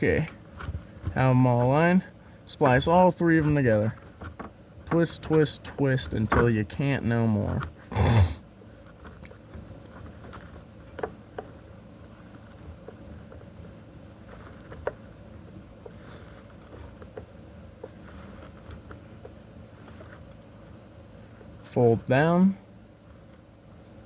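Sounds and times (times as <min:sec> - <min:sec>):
faint steady hum: 0:00.0 - 0:24.0
wires twisted by hand: 0:08.7 - 0:20.8.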